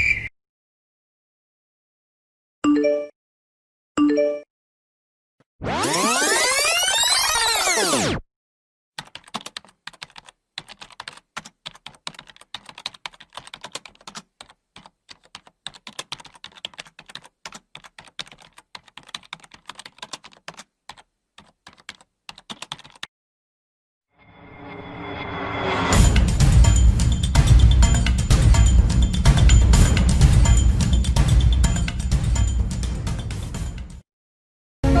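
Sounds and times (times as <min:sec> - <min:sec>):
swooping electronic sound effect: 0:05.6 - 0:08.2
keyboard typing: 0:09.0 - 0:23.1.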